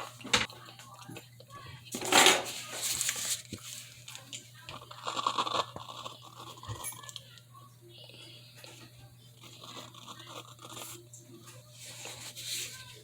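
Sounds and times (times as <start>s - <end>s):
crunchy chewing: 4.7s - 7.3s, 9.4s - 11.2s.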